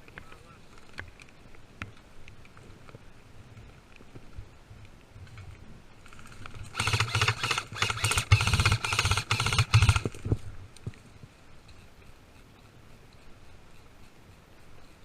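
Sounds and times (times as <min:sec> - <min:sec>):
electric gun firing bursts: 0:06.7 - 0:10.1.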